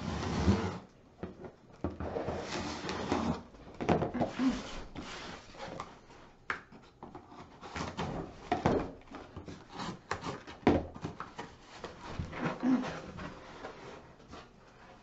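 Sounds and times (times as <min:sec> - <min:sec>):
cardboard boxes rustling and knocking: 0:06.8 - 0:15.0.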